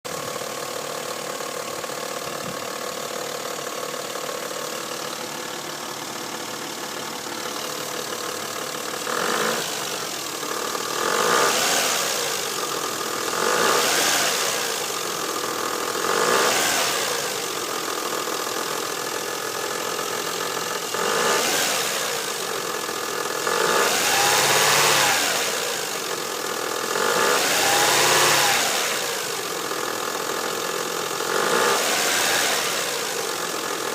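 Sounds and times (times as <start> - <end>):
car engine idling: 0.1 - 33.9
engine revving: 6.9 - 33.9.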